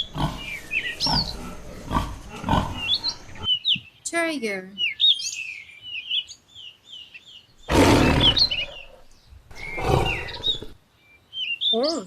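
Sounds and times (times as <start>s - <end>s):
tiger roaring: 0.0s - 3.5s, 7.7s - 10.8s
birds chirping: 0.0s - 12.0s.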